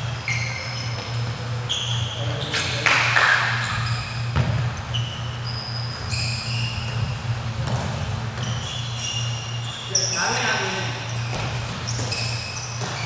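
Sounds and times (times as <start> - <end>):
sneakers squeaking on floor: 0.0 - 13.0
basketball bouncing: 3.8 - 5.2, 5.8 - 8.9, 11.1 - 13.0.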